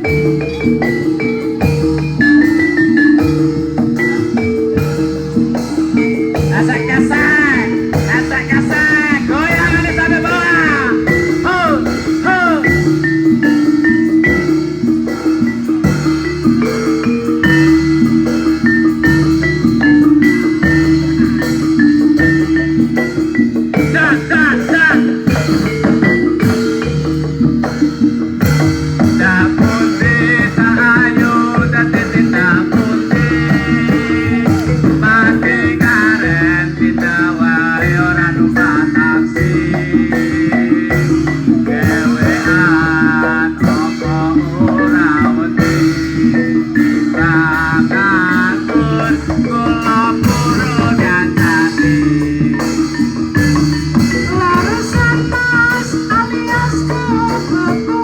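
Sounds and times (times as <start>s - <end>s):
metallophone notes: 0.0s - 58.0s
warbling melody line: 0.0s - 58.0s
drum pulse: 6.6s - 14.1s.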